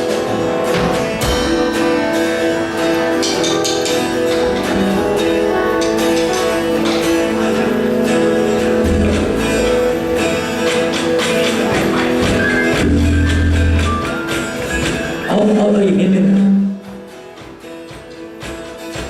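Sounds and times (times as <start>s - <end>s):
guitar strumming chords: 0.0s - 19.0s
deep bass notes: 6.7s - 10.5s, 12.2s - 14.2s.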